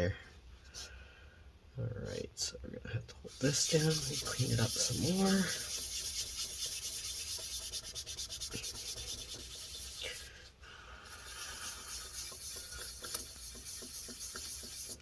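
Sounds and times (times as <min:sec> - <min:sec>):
paper towel scrubbing metal: 0:03.3 - 0:10.3, 0:11.1 - 0:15.0.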